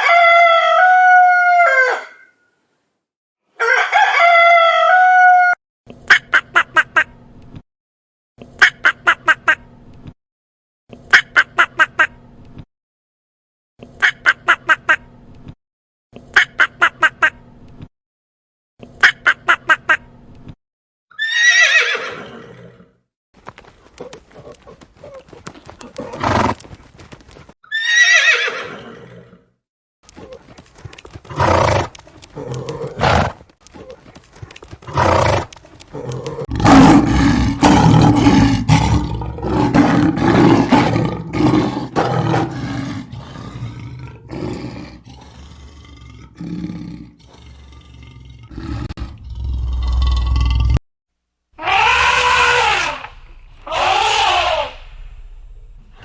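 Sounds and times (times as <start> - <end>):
horse whinnying: 1.4 - 2.3, 21.1 - 22.8, 27.7 - 29.4, 51.6 - 55.4.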